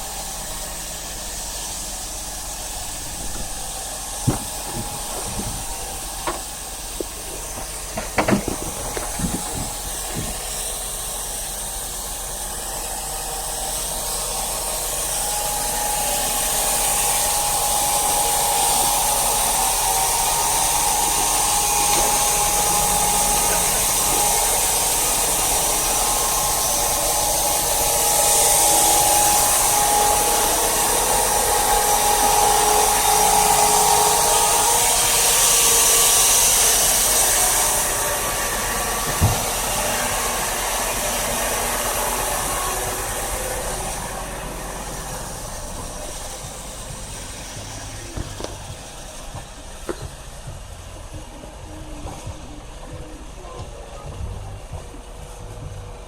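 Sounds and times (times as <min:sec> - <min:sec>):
machine whine and hiss: 0:00.0 - 0:56.0
sharp knocks: 0:04.2 - 0:10.6.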